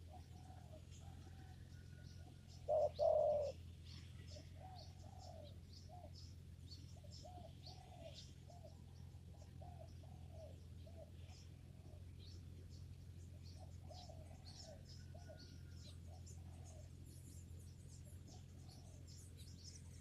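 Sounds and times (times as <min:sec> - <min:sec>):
dove cooing: 0:00.0 - 0:06.2, 0:07.0 - 0:12.4, 0:13.4 - 0:17.0, 0:18.2 - 0:19.2
low steady hum: 0:00.0 - 0:20.0
small birds chirping: 0:00.0 - 0:20.0.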